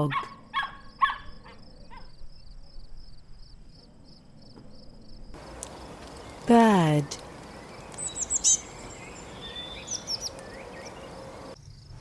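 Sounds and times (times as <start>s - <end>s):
dog yapping: 0.1s - 2.1s
steady high chirping: 5.4s - 11.6s.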